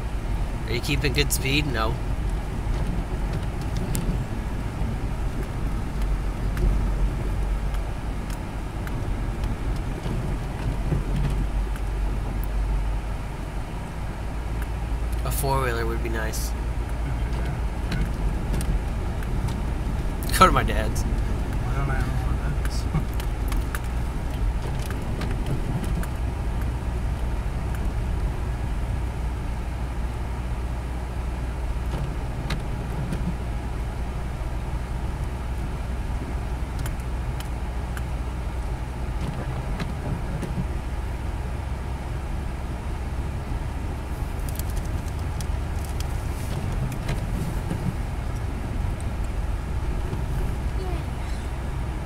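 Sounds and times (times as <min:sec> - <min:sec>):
car engine and tyres rumbling: 0:00.0 - 0:52.0.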